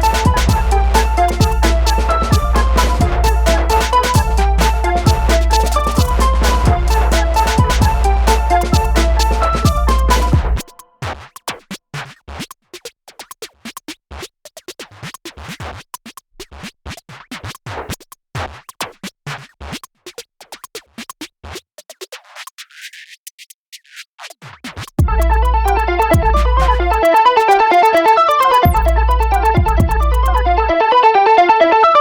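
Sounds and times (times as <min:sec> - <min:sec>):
heavy bass beat: 0:00.0 - 0:10.7, 0:25.0 - 0:30.7
electronic sweep: 0:00.0 - 0:10.8, 0:25.1 - 0:30.8
repeating keyboard melody: 0:00.0 - 0:10.8, 0:25.1 - 0:32.0
scratchy electronic clicks and stabs: 0:00.0 - 0:12.4, 0:19.6 - 0:30.7.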